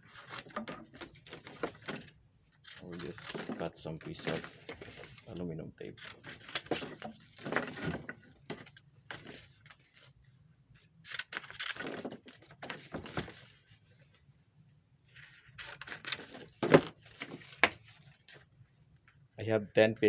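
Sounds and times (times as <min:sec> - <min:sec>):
foil tape crinkling and tearing: 0:02.6 - 0:07.8, 0:11.0 - 0:12.9, 0:15.4 - 0:18.4.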